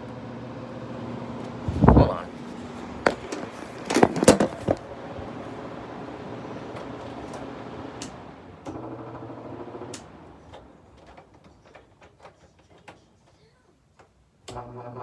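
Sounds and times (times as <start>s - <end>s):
air conditioner humming: 0.0s - 14.5s.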